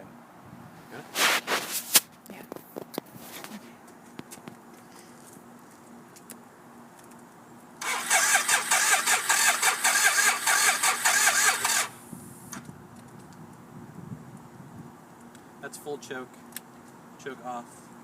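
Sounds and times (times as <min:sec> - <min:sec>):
motorcycle engine cranking: 0:07.8 - 0:12.0.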